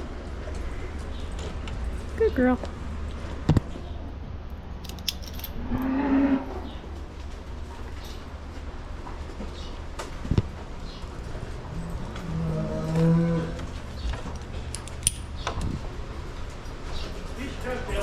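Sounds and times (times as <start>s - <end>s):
steady low hum: 0.0s - 18.0s
light metal clinking: 4.8s - 5.6s
cow mooing: 5.6s - 6.7s, 11.8s - 13.7s.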